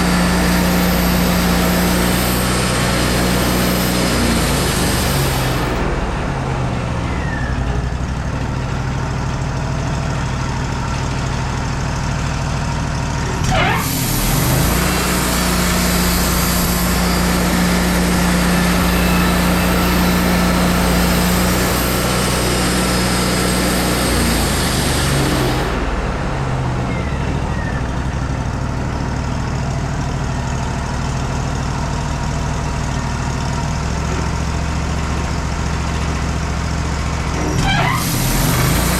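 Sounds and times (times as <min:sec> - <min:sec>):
band saw blade cutting log: 0:00.0 - 0:05.9, 0:13.3 - 0:25.9, 0:37.4 - 0:38.9
sawmill engine running: 0:00.0 - 0:38.9.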